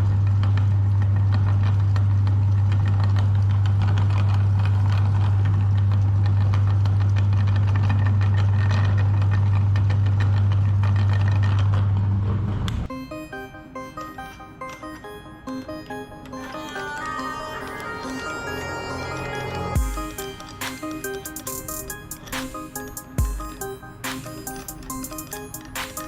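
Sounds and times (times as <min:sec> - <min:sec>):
meat grinder humming: 0:00.0 - 0:12.4.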